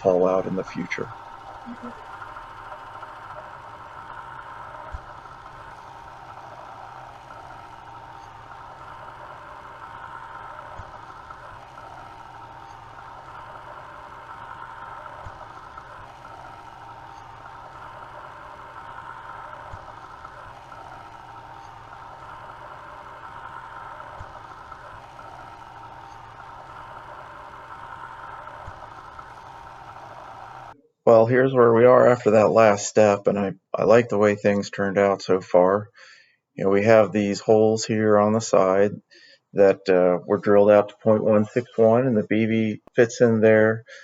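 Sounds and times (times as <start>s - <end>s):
drilling machine running: 0.0s - 30.8s.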